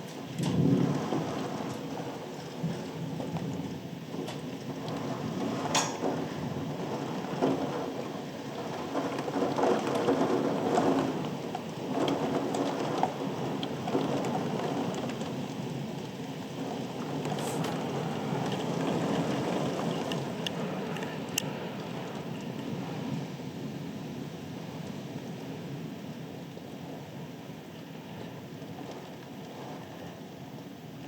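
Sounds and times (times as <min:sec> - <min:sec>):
rain falling steadily: 0:00.0 - 0:31.0
sharp taps of raindrops: 0:08.6 - 0:22.8.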